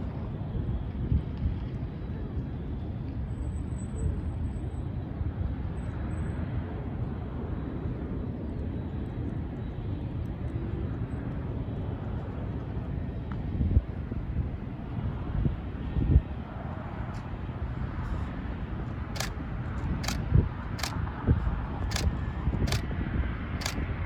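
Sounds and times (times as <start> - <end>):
jet engines rumbling: 15.1 - 24.0.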